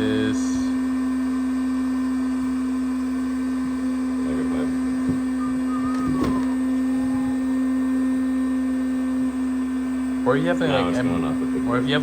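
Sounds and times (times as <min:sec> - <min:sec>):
electric motor humming: 0:02.6 - 0:12.0.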